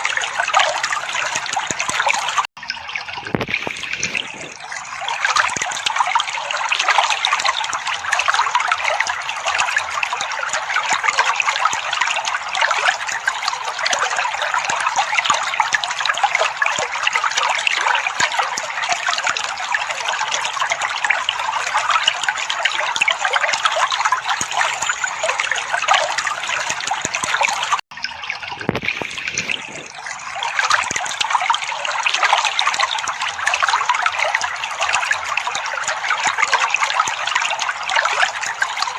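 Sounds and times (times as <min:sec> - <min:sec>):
water trickling and burbling: 0:00.0 - 0:38.9.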